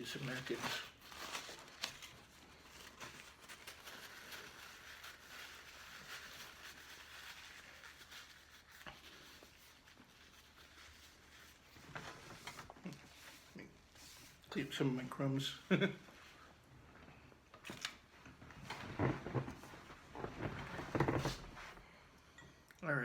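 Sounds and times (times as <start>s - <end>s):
paper napkin rustling: 0.0s - 16.6s, 17.6s - 21.9s.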